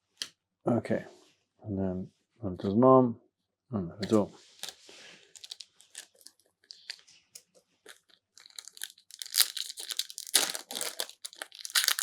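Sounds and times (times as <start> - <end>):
foil wrapper crinkling and tearing: 4.0 - 7.1, 7.9 - 12.0.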